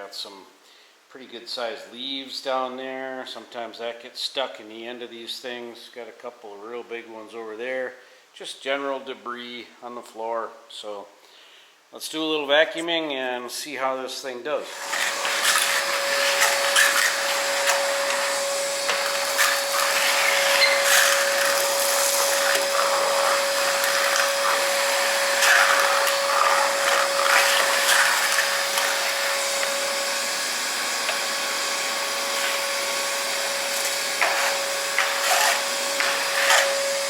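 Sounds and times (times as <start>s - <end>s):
debris rattling up vacuum hose: 14.7s - 37.0s
wet dry vacuum whining: 14.7s - 37.0s.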